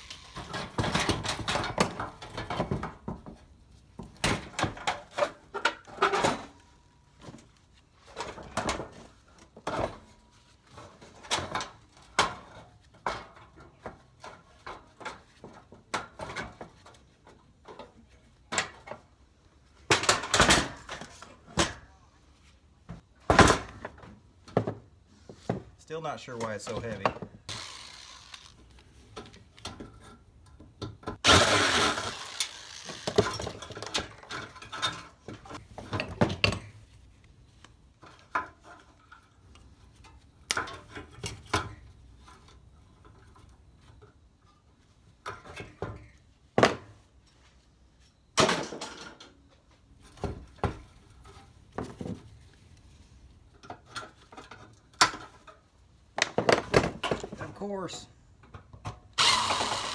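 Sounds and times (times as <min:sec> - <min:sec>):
metal parts clanking and rattling: 0:31.2 - 0:35.2.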